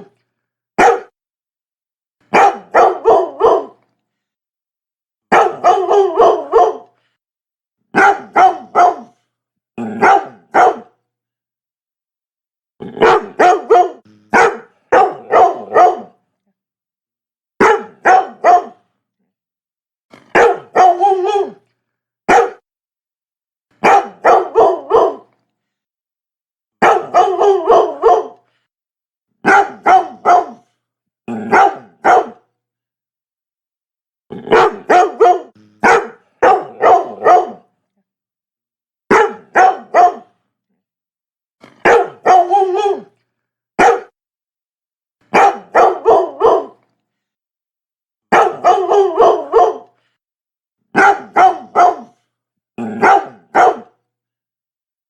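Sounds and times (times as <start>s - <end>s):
dog barking: 0.8s - 1.2s, 2.3s - 3.8s, 5.3s - 7.0s, 7.9s - 9.2s, 9.8s - 11.0s, 12.9s - 16.2s, 17.6s - 18.9s, 20.2s - 21.6s, 22.3s - 22.6s, 23.8s - 25.3s, 26.8s - 28.4s, 29.4s - 30.7s, 31.4s - 32.5s, 34.4s - 37.7s, 39.1s - 40.4s, 41.7s - 43.1s, 43.8s - 44.2s, 45.3s - 46.8s, 48.3s - 50.0s, 50.9s - 52.2s, 52.8s - 54.0s.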